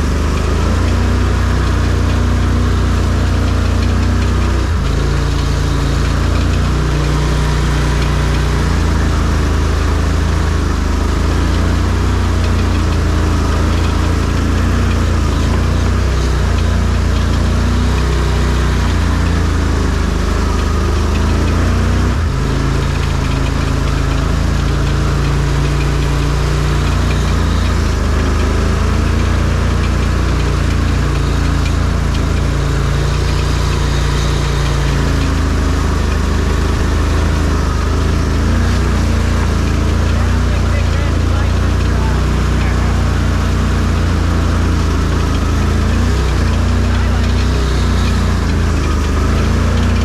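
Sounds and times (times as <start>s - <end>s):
amphibious vehicle engine running: 0.0s - 50.0s.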